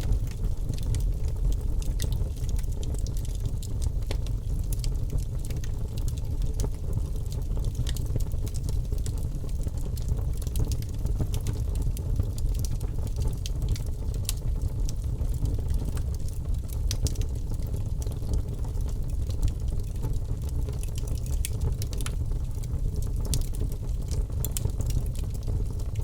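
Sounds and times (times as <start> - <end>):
fire flames rumbling: 0.0 - 26.0
wood crackling and popping: 0.0 - 26.0.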